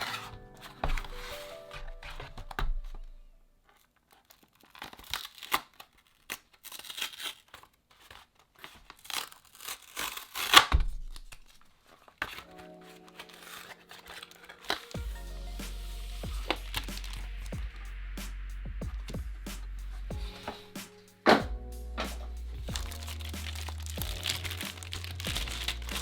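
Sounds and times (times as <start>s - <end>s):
background music: 0.0s - 3.4s, 12.4s - 26.0s
packaging crinkling and tearing: 0.0s - 15.0s, 16.3s - 17.5s, 22.0s - 26.0s.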